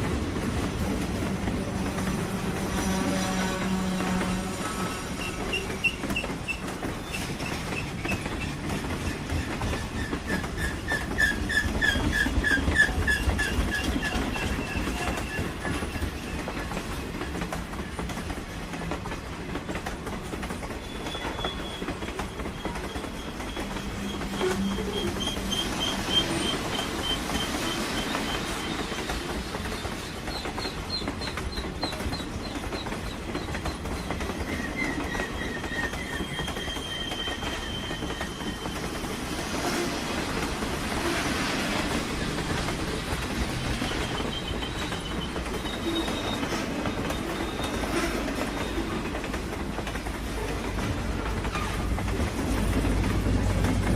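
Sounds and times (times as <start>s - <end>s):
train rumbling on rails: 0.0s - 53.9s
high pulsing wheel squeal: 34.5s - 38.9s.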